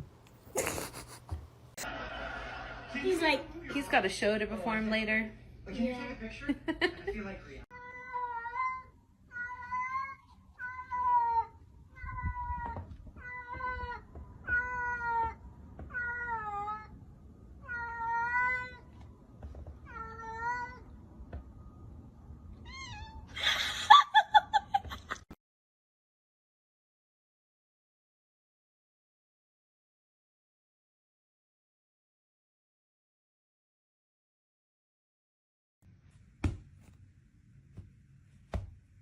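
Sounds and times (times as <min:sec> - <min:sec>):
cat meowing: 0:07.8 - 0:16.9, 0:22.6 - 0:23.4.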